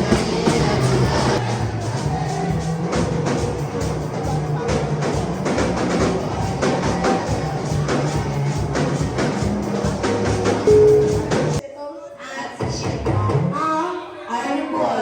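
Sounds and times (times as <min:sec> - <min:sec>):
music with drums: 0:00.0 - 0:11.6.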